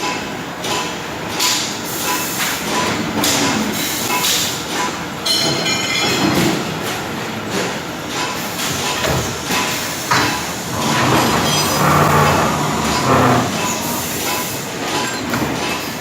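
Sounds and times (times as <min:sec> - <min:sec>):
circular saw machine clattering: 0:09.5 - 0:16.0
machine hum: 0:10.1 - 0:14.9.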